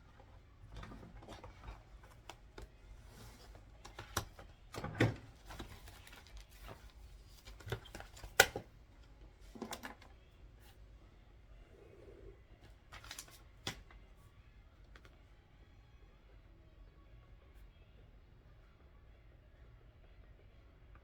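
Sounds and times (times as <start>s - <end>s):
paper being handled: 12.9s - 13.8s.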